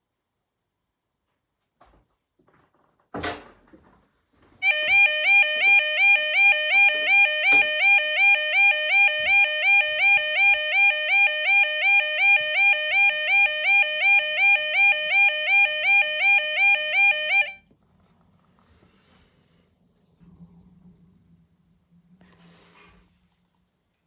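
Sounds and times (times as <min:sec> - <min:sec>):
two-tone alarm buzzer warble: 0:04.6 - 0:17.6.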